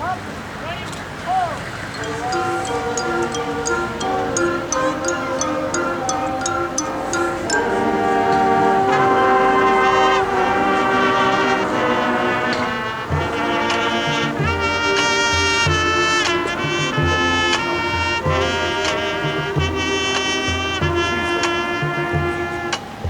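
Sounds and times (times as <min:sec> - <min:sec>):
brass section playing chords: 0:02.0 - 0:23.0
low drum beats: 0:12.6 - 0:23.0.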